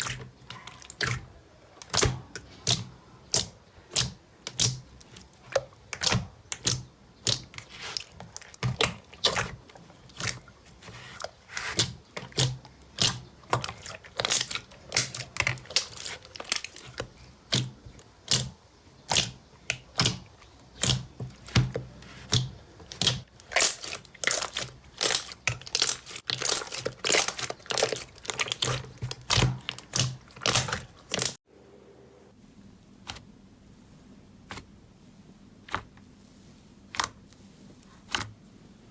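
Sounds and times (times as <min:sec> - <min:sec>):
slime popping and crackling: 0:01.8 - 0:31.4.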